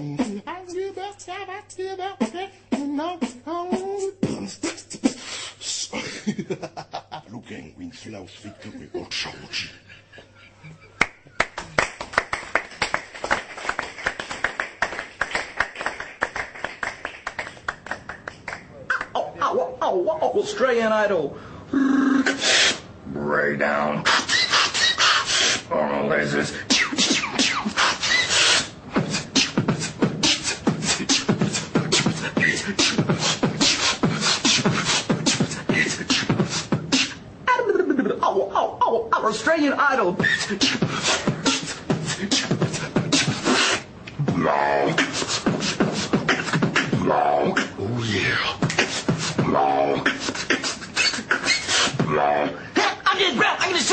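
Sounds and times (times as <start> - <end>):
person beatboxing: 0.0 - 6.0, 9.1 - 9.8, 16.8 - 19.4, 21.7 - 23.0, 24.0 - 38.3, 40.1 - 52.7.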